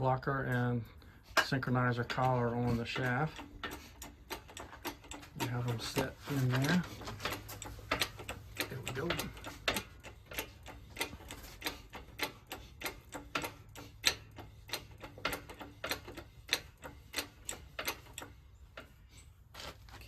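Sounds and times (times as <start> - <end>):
hydraulic press pump clicking: 1.4 - 19.0.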